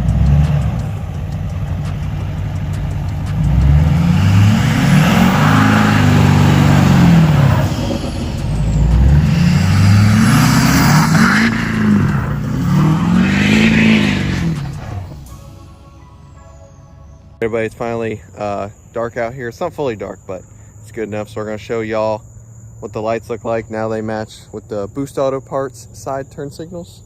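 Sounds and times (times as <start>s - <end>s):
diesel engine idling and revving: 0.0s - 17.4s.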